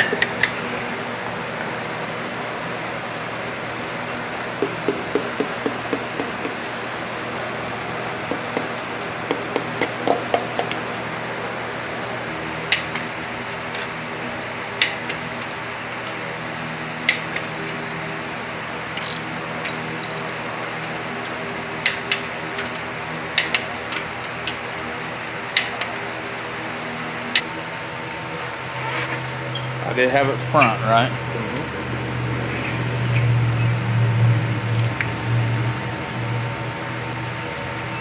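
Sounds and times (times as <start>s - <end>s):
steady machine hum: 0.0s - 38.0s.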